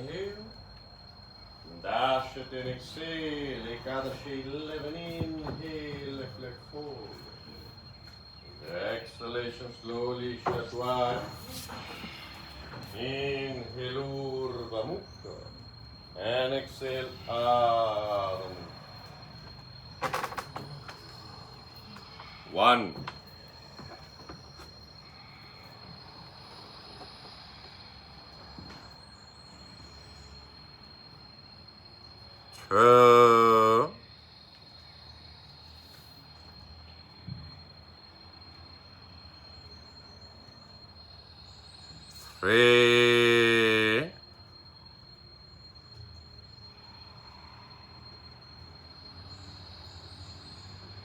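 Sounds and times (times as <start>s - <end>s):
low steady hiss: 0.0s - 19.4s
high-pitched whine: 0.0s - 50.9s.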